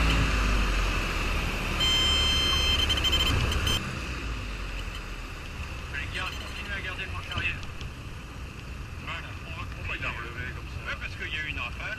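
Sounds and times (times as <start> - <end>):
high electronic warning tone: 1.8 - 3.8, 6.0 - 7.0.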